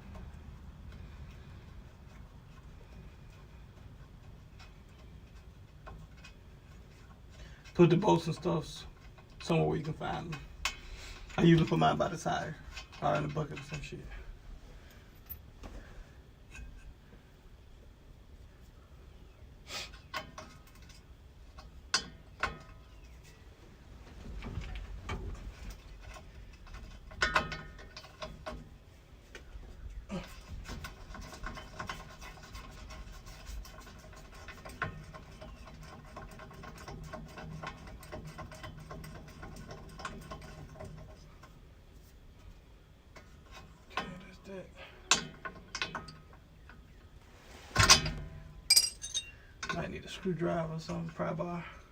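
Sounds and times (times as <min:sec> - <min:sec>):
metal tools clinking and knocking: 0:48.7 - 0:49.4.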